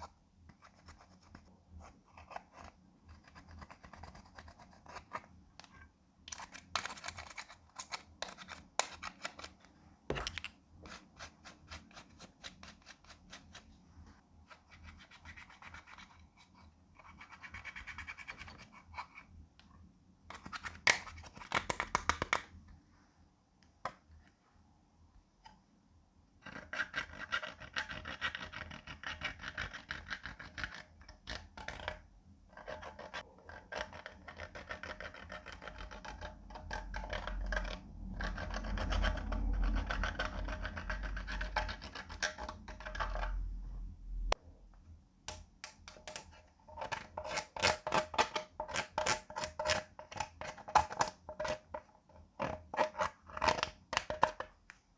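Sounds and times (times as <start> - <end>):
low rumble: 43.2 - 44.7.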